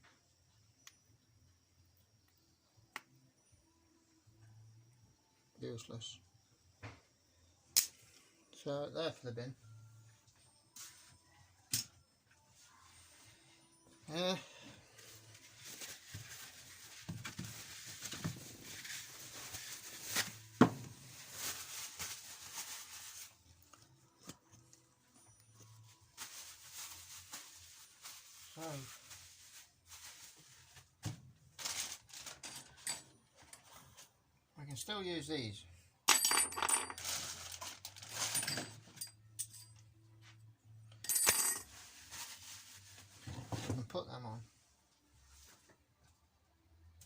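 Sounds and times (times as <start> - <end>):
rustling of workshop parts: 9.6 - 34.3, 36.1 - 46.2
small parts clinking and rustling: 31.6 - 33.7, 36.1 - 39.9, 40.9 - 42.5.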